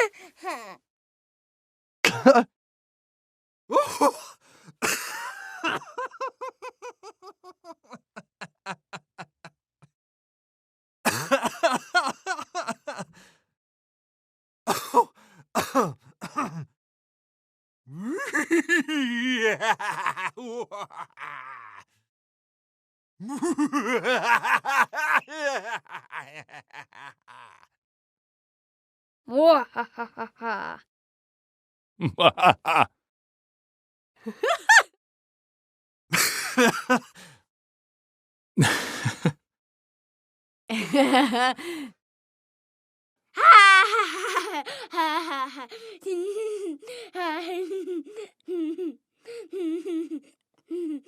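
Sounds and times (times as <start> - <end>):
person laughing: 2.1 - 2.5, 3.7 - 9.6, 11.1 - 13.3, 17.9 - 21.9, 23.2 - 27.7, 29.5 - 30.8, 32.0 - 32.9, 34.2 - 34.9, 36.1 - 37.2, 38.6 - 39.3, 40.7 - 41.9, 43.4 - 51.0.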